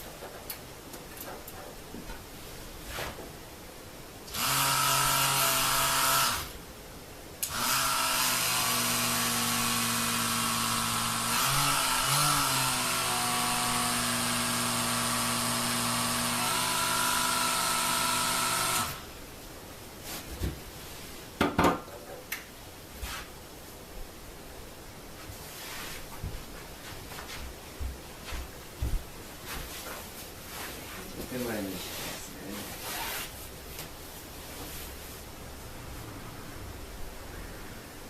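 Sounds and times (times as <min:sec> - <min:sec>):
electric massager humming: 0:04.3 - 0:06.5, 0:07.4 - 0:19.1.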